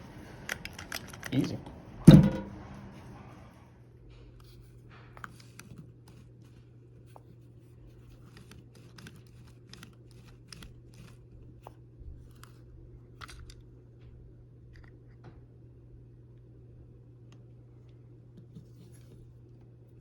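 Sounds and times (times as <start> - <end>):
steady low hum: 0.0 - 5.1
plastic parts clicking: 13.2 - 13.6.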